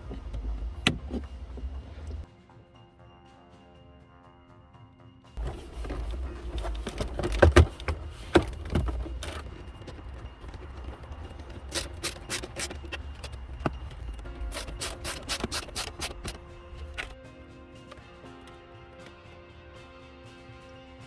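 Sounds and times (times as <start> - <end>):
background music: 0.0 - 21.0
plastic parts clicking and scraping: 5.4 - 17.2.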